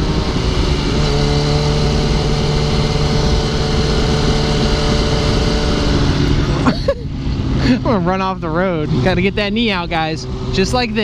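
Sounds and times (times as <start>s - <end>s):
wind noise rushing: 0.0s - 7.8s
motorcycle engine running: 0.0s - 11.0s.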